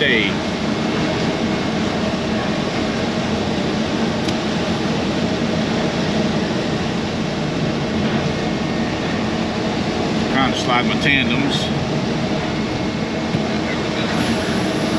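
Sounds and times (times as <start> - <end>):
diesel truck engine running: 0.0 - 14.9.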